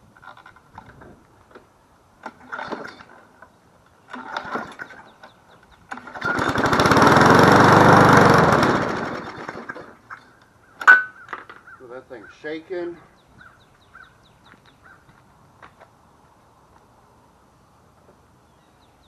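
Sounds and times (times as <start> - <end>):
recoil cord pulls: 2.2 - 3.2, 4.1 - 10.3
lawn mower engine running: 2.2 - 10.2.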